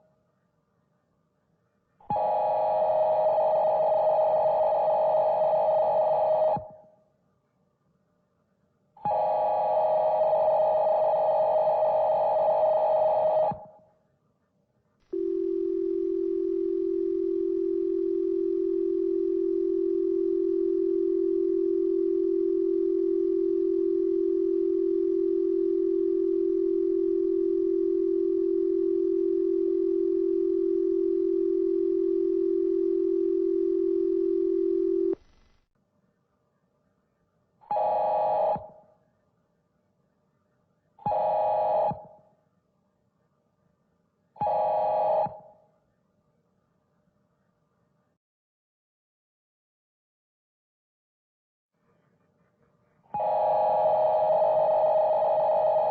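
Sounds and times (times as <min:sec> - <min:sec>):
low dual tone attention signal: 0:15.2 - 0:35.2.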